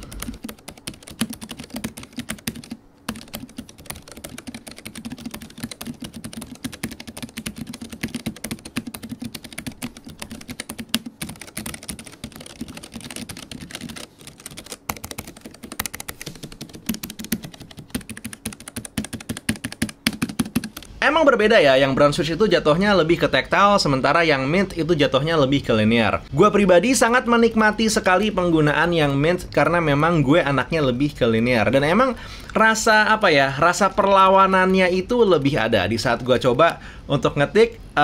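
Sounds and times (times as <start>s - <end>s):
keyboard typing: 0.0s - 21.0s.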